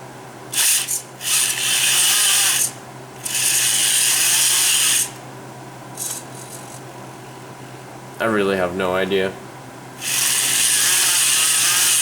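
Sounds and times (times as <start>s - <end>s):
small electric motors grinding gears: 0.5s - 5.2s, 6.0s - 6.8s, 10.0s - 12.0s.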